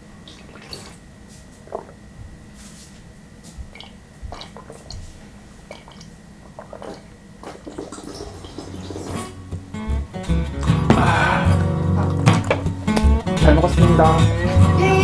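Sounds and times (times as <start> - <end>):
slurping soup: 0.3 - 1.0, 3.7 - 9.4
squishy chewing: 0.3 - 1.0, 3.6 - 9.2.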